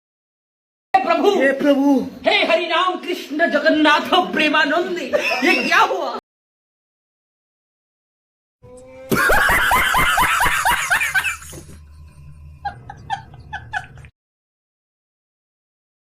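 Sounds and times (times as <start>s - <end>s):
burst of rapid laughter: 9.1s - 11.7s.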